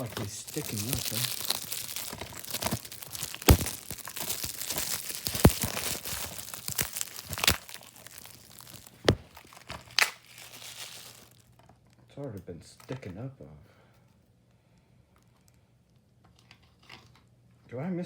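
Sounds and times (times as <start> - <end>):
plastic wrapping crinkling and tearing: 0.0 - 11.7.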